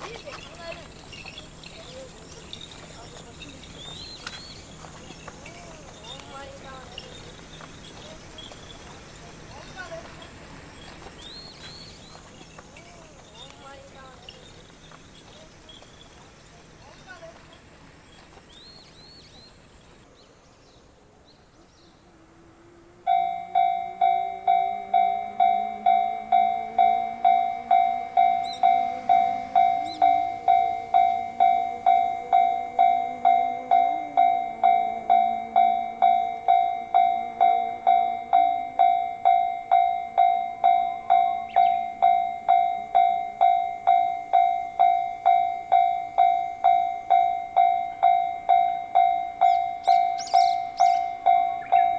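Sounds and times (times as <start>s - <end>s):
level crossing warning bell: 0.0s - 20.0s, 23.0s - 51.9s
approaching train running: 0.0s - 51.9s.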